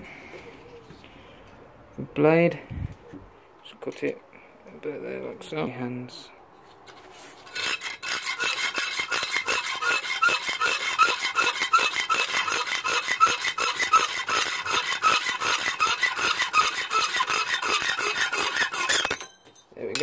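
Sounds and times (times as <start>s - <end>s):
hacksaw cutting metal: 7.4s - 20.0s.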